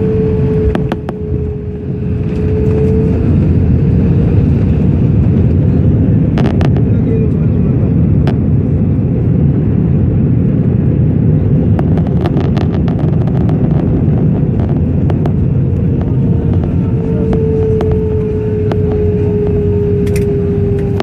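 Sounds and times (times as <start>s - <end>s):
whining tone falling in pitch: 0.0s - 3.8s, 16.5s - 21.0s
low rumble of airliner engines: 0.0s - 21.0s.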